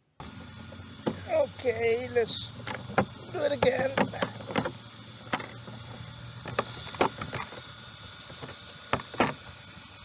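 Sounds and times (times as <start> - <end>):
steady low hum: 0.0 - 10.0
sharp clicks and knocks: 2.6 - 7.6, 8.3 - 9.4.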